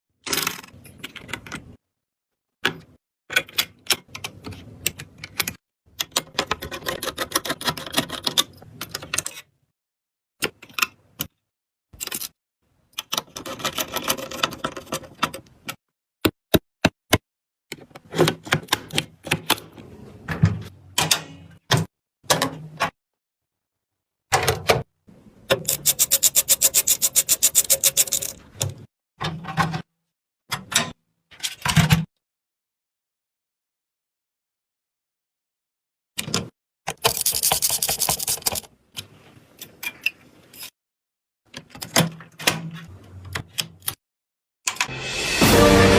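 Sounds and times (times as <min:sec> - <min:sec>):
rapid keyboard clicking: 0:25.7 - 0:28.4, 0:36.9 - 0:38.7.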